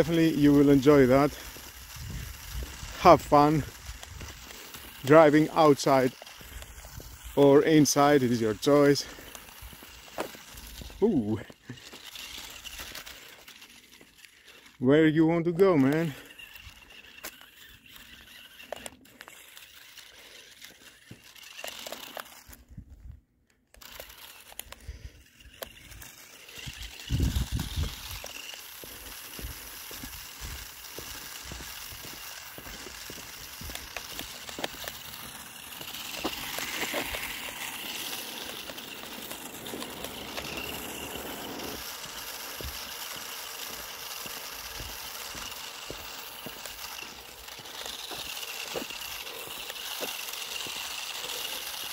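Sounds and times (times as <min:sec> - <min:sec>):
toy car rattling over rough ground: 0:00.0 - 0:51.9.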